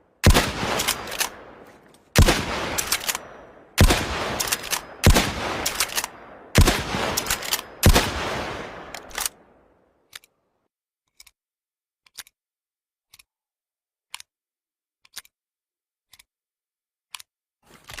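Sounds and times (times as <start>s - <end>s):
rifle shots with rolling echo: 0.1s - 9.9s.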